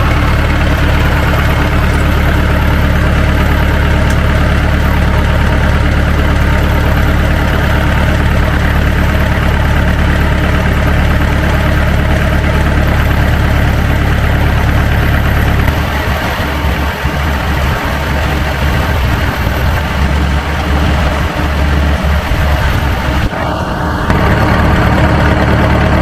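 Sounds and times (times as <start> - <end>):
tractor engine idling: 0.0 - 26.0.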